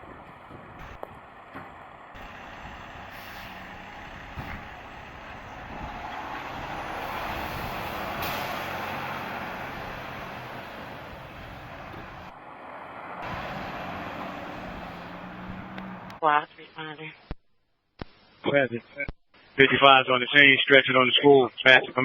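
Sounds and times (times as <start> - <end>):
fire truck engine running: 0.0 - 16.2
short hiss: 3.1 - 3.6.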